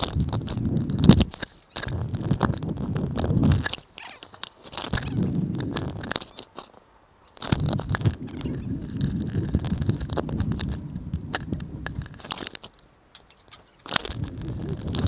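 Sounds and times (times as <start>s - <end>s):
scooter wheels rolling: 0.0s - 15.0s.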